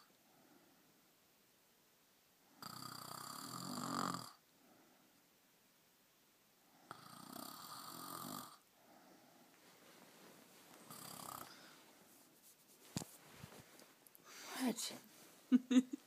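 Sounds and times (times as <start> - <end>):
woman snoring: 2.6 - 4.4, 6.9 - 8.6, 10.9 - 11.7.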